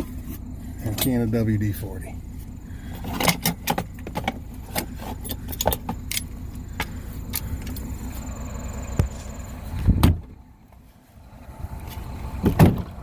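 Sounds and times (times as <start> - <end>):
diesel truck idling: 0.0 - 13.0
metal tools clinking and rattling: 0.8 - 1.4, 2.9 - 7.9
heavy thump: 9.8 - 10.3, 12.4 - 12.9.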